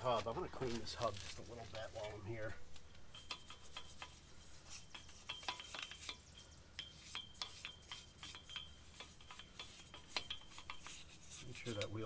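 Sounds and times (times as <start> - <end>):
scraping and rubbing on metal: 0.1 - 2.5, 3.1 - 12.0
high metallic ring: 3.1 - 12.0.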